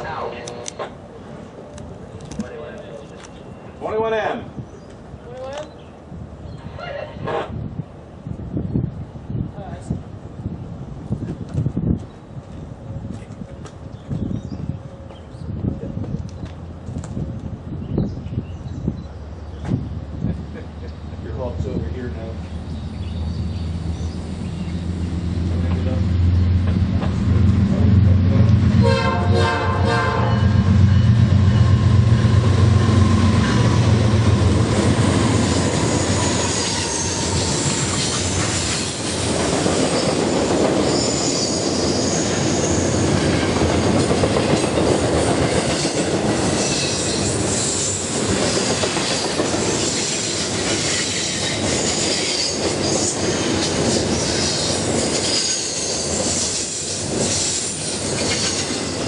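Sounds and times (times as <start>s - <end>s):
diesel locomotive engine drone: 0.0s - 59.0s
train cars rumbling: 0.0s - 59.0s
clickety-clack over rail joints: 25.5s - 28.8s, 43.0s - 59.0s
train horn: 28.8s - 31.8s
high wheel squeal: 35.2s - 39.0s, 40.8s - 43.1s, 49.8s - 59.0s.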